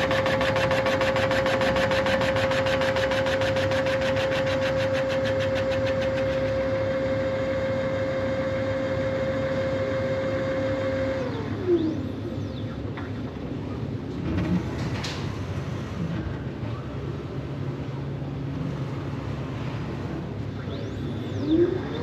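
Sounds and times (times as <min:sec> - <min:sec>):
boring machine whine: 0:00.0 - 0:13.1, 0:20.3 - 0:22.0.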